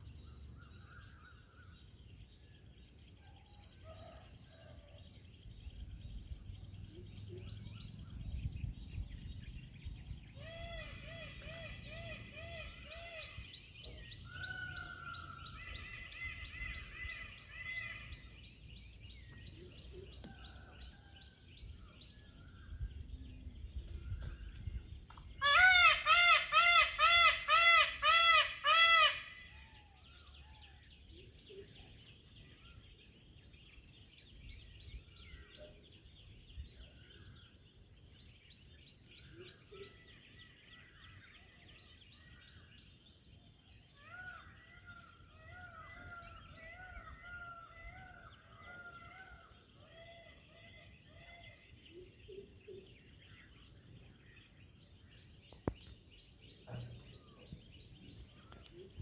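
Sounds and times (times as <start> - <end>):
small birds chirping: 4.5 - 25.4, 29.6 - 59.0
peacock honking calls: 25.4 - 29.5.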